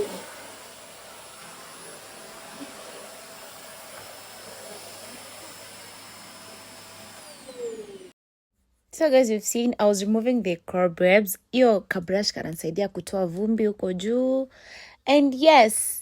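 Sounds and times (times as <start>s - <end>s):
vacuum cleaner running: 0.0s - 8.2s.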